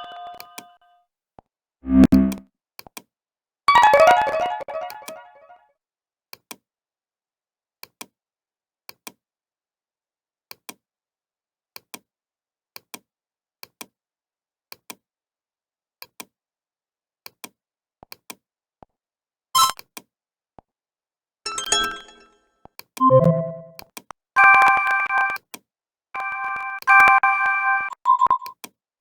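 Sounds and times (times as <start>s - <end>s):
phone notification tone: 0.0s - 0.6s, 1.9s - 2.4s, 3.7s - 5.4s, 23.0s - 23.8s
electronic notification blip: 1.9s - 2.4s, 23.0s - 23.8s.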